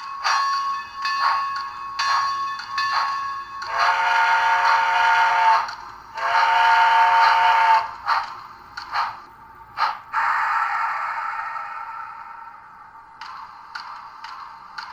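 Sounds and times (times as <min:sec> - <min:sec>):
model steam whistle blasts: 0:03.7 - 0:07.9.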